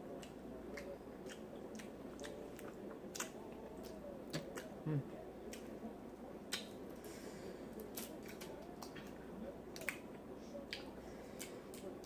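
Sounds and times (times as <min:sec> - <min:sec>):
wet eating clicks: 0:00.2 - 0:04.7, 0:06.5 - 0:06.8.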